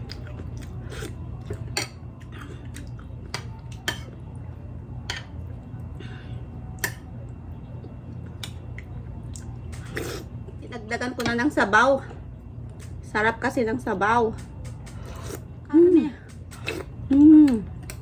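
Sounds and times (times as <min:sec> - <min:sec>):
chewing: 0:00.0 - 0:04.4
steady low hum: 0:00.0 - 0:18.0.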